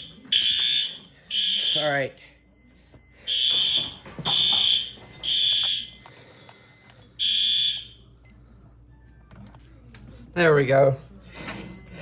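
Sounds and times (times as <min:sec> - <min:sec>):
high-pitched smoke alarm beeps: 0:00.0 - 0:08.1, 0:11.3 - 0:12.0.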